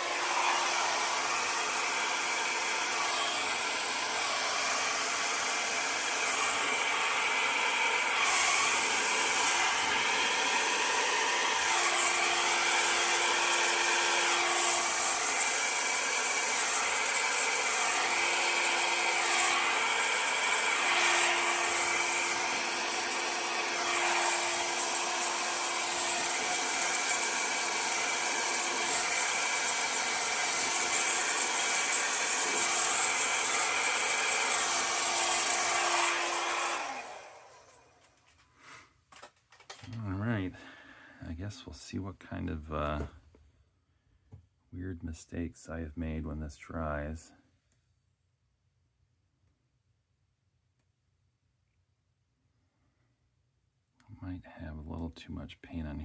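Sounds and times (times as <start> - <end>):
hair dryer blowing: 0.0 - 38.8.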